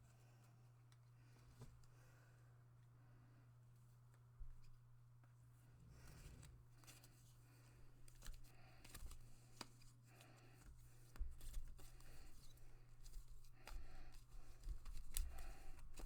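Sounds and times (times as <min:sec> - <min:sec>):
cards being shuffled: 0:08.0 - 0:16.0.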